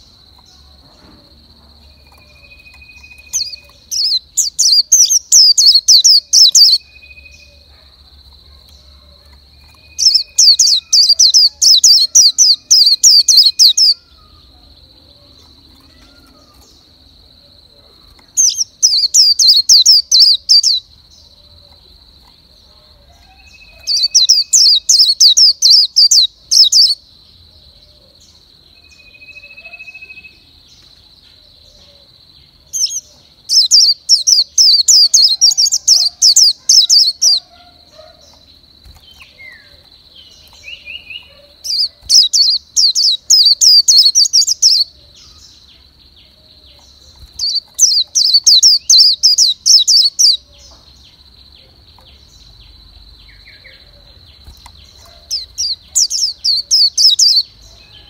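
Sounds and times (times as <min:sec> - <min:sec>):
bird chirping rapidly: 0:01.9 - 0:07.7, 0:09.6 - 0:14.4, 0:18.4 - 0:20.8, 0:23.4 - 0:27.0, 0:32.8 - 0:44.9, 0:46.8 - 0:50.5, 0:54.4 - 0:57.5.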